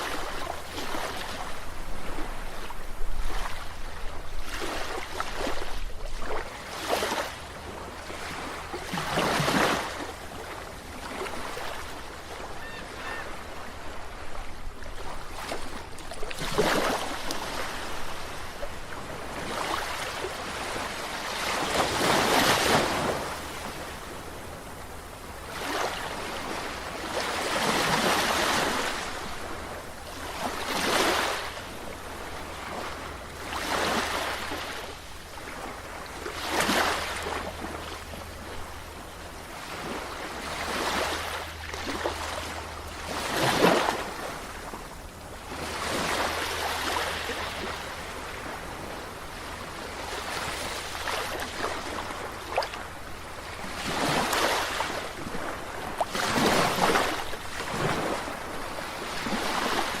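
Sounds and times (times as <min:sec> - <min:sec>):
sea waves washing on shore: 0:00.0 - 1:00.0.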